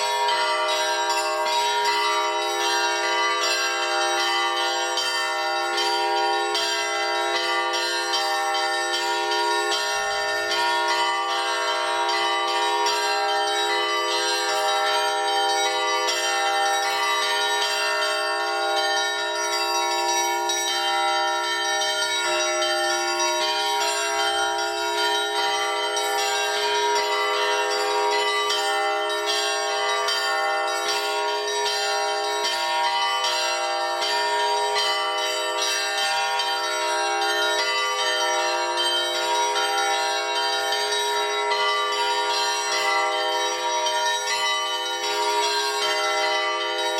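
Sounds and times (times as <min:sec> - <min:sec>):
church bells pealing: 0:00.0 - 0:46.9.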